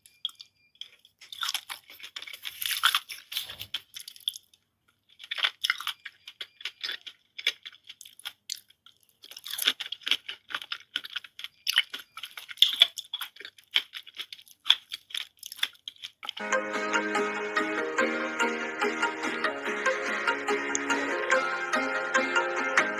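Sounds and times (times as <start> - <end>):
chewing crunchy fruit: 0.0 - 16.4.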